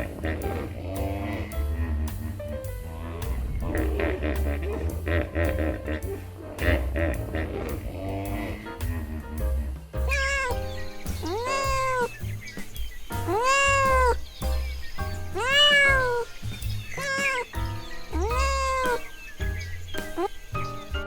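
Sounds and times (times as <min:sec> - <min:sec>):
background music: 0:00.0 - 0:21.0
cat meowing: 0:10.0 - 0:12.2, 0:13.2 - 0:14.2, 0:15.3 - 0:17.5, 0:18.1 - 0:19.1.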